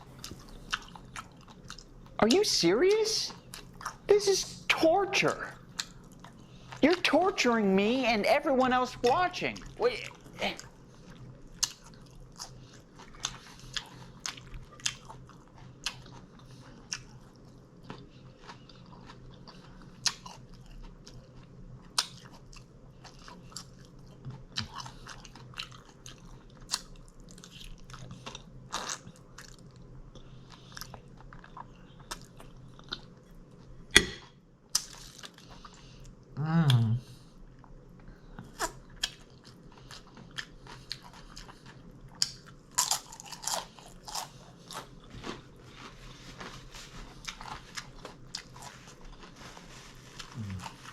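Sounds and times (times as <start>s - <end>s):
crunchy bites and chewing: 10.1s - 33.1s, 38.4s - 50.9s
person humming: 36.4s - 37.0s, 50.4s - 50.8s.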